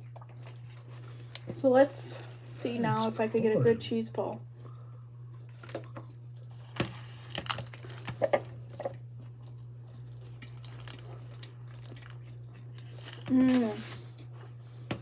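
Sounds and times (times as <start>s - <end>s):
low steady hum: 0.0s - 15.0s
biting and chewing food: 5.4s - 15.0s.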